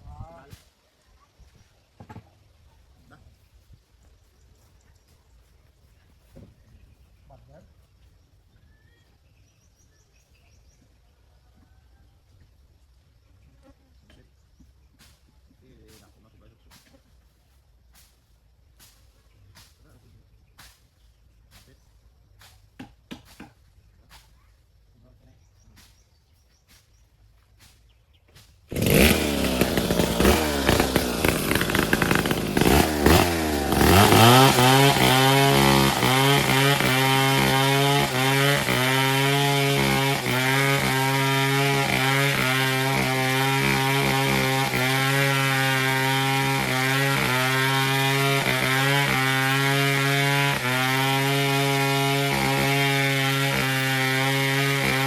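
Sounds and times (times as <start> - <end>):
chainsaw revving: 28.7 - 55.0.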